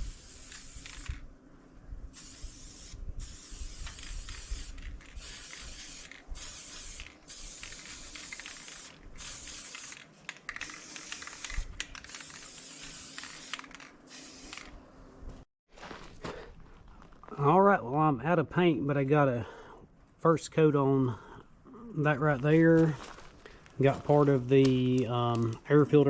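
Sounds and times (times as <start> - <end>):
spray paint hissing: 0.0 - 1.2, 2.1 - 14.8.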